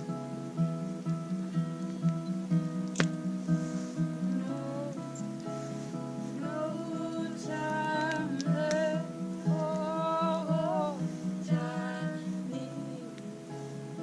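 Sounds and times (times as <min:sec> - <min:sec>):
acoustic guitar strumming: 0:00.0 - 0:14.0
person singing: 0:04.2 - 0:05.3, 0:06.3 - 0:13.4.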